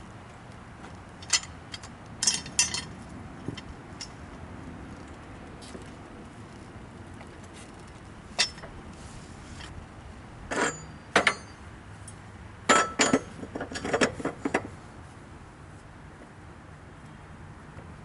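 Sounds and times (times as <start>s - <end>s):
metal clanks and clinks: 1.2s - 4.2s, 8.4s - 8.7s, 10.5s - 11.6s, 12.7s - 14.6s.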